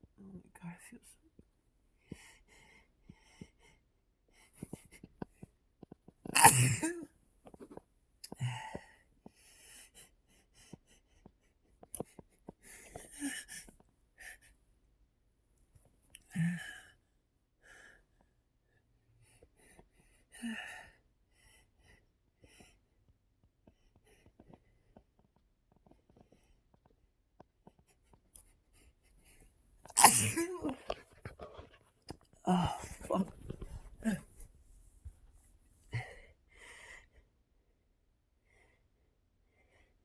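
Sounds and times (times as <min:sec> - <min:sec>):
man sneezing: 0:06.4 - 0:07.0, 0:30.0 - 0:30.9
breaths: 0:32.5 - 0:37.3.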